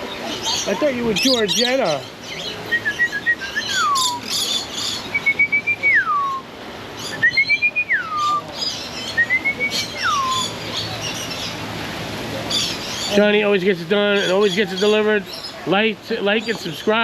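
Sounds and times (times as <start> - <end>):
high chirping of birds: 0.0 - 11.8, 12.4 - 17.0
whistled call sliding down: 2.3 - 10.6.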